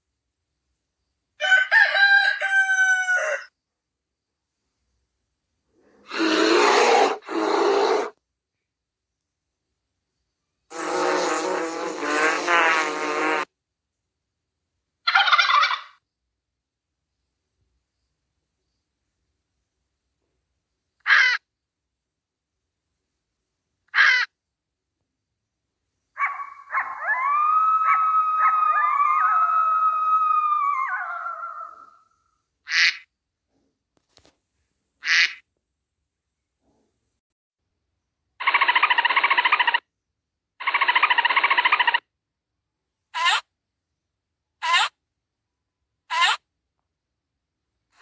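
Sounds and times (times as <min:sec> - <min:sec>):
animal call with warbling rattle: 0:15.0 - 0:16.0, 0:21.0 - 0:21.4, 0:26.2 - 0:32.1, 0:38.4 - 0:39.9, 0:40.6 - 0:42.1, 0:43.2 - 0:43.4, 0:44.6 - 0:44.9, 0:46.1 - 0:46.4
dog yipping and howling: 0:26.2 - 0:32.0.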